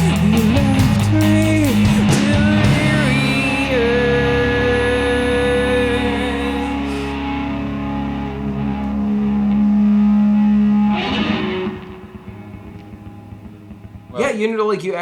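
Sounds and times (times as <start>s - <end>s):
distorted electric guitar and bass chord: 0.0s - 14.6s.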